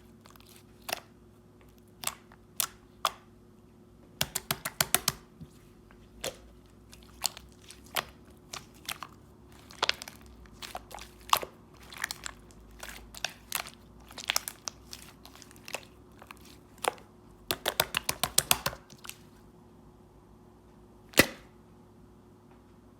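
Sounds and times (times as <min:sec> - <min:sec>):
slime clicking and popping: 0:04.2 - 0:05.3, 0:06.2 - 0:19.2.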